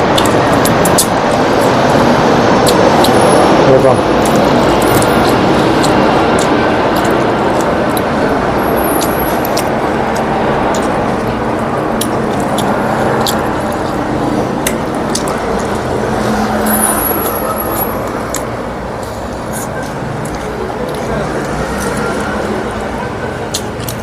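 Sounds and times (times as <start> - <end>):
road traffic: 0.0 - 24.0
high squeals: 16.4 - 18.4.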